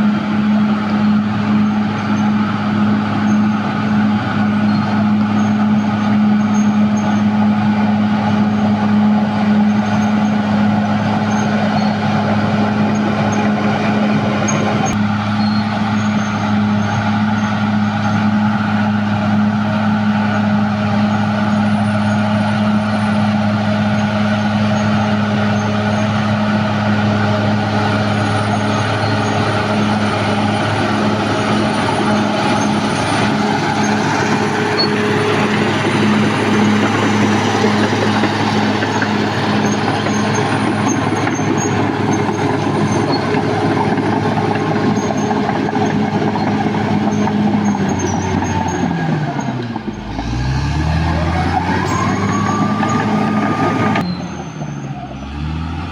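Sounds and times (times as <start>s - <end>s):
bulldozer diesel engine running: 0.0s - 55.9s.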